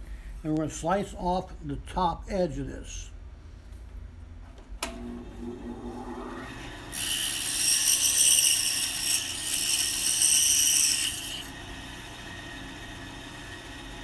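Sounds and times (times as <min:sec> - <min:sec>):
bandsaw cutting wood: 0:06.5 - 0:11.6
bandsaw running: 0:06.8 - 0:11.6.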